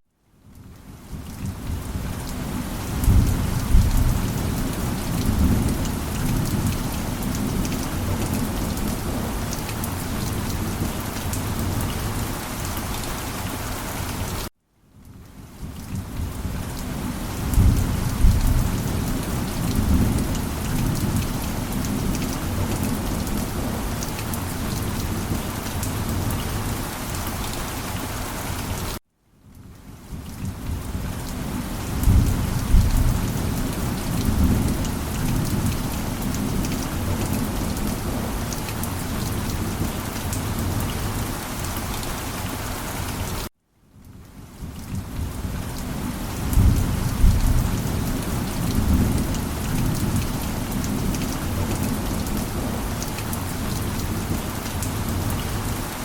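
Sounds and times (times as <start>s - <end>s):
steady rain: 0.2s - 56.0s
thunder rumbling: 2.9s - 12.2s, 15.9s - 26.7s, 30.6s - 40.8s, 46.4s - 52.9s.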